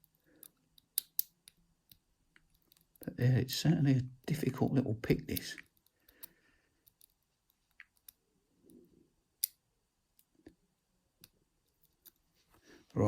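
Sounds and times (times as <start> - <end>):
lock pick clicking in a lock: 0.4 - 3.0, 9.4 - 9.6.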